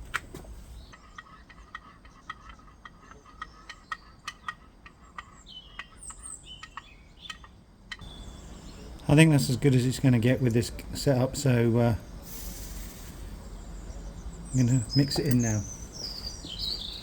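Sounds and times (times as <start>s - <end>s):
bird ticking calls: 0.8s - 17.0s
gliding bird chirps: 12.0s - 17.0s.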